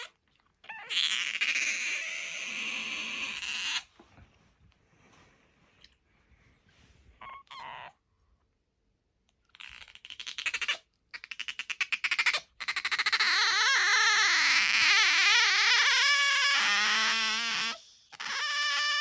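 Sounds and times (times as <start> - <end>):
otter squeaking and squealing: 0.0 - 3.9, 7.2 - 8.0, 9.5 - 19.0.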